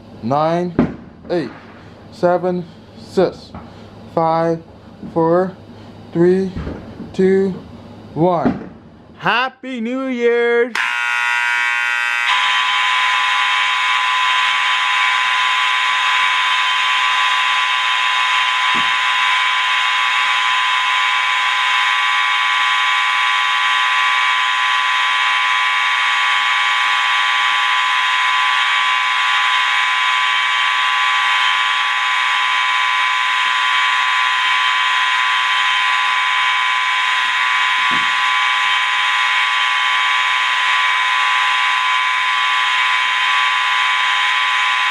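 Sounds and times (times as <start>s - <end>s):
fire alarms blaring: 10.8s - 44.9s.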